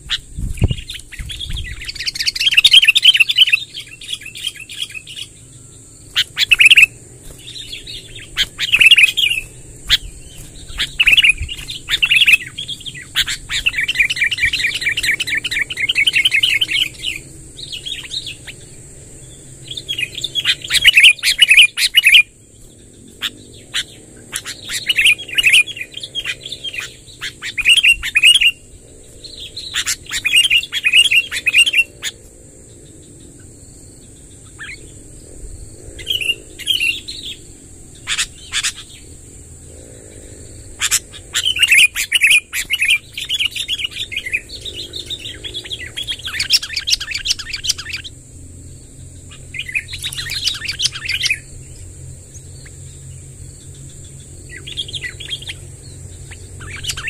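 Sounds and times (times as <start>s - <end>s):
bird singing chattering phrases: 0.0s - 35.0s, 35.9s - 48.2s, 48.8s - 57.0s
faint high whine: 0.0s - 57.0s.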